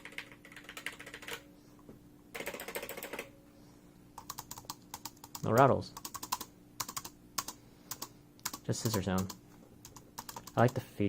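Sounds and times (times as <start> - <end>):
keyboard typing clicks: 4.2 - 10.8.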